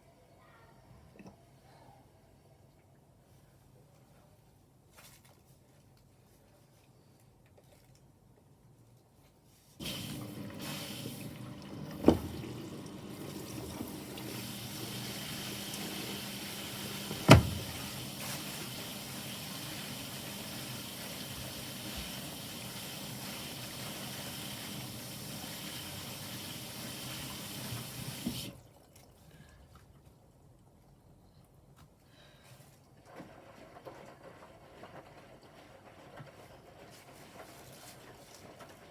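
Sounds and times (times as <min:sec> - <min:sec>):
water rushing into washing machine: 0:09.8 - 0:28.6.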